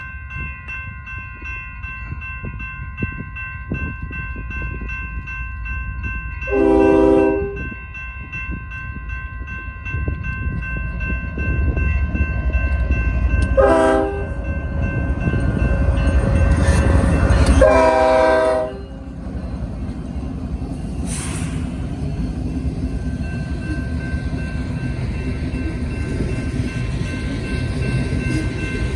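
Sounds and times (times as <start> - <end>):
crossing bell ringing: 0.0 - 28.9
train rumbling: 0.0 - 28.9
locomotive horn blasts: 6.5 - 7.7, 13.6 - 14.4, 17.6 - 18.9.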